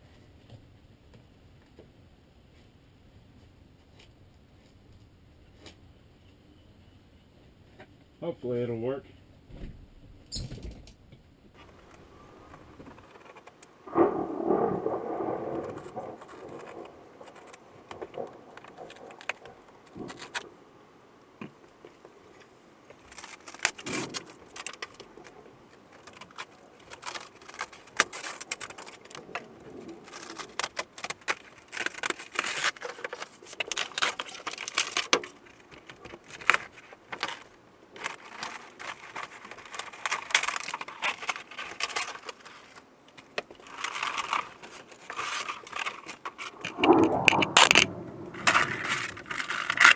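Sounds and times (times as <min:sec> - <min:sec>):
paneling being torn down: 0:11.6 - 0:49.9.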